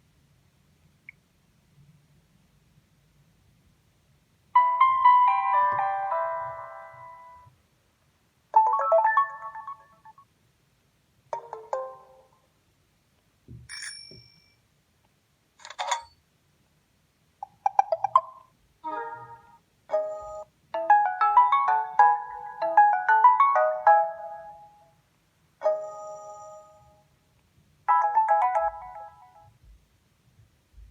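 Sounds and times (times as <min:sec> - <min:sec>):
melodic ringtone: 0:04.6 - 0:07.5, 0:08.6 - 0:10.2, 0:19.9 - 0:24.8, 0:25.6 - 0:27.0, 0:27.9 - 0:29.5
phone chiming melody: 0:04.6 - 0:07.5, 0:08.6 - 0:10.1, 0:19.9 - 0:24.7, 0:25.6 - 0:26.9, 0:27.9 - 0:29.5.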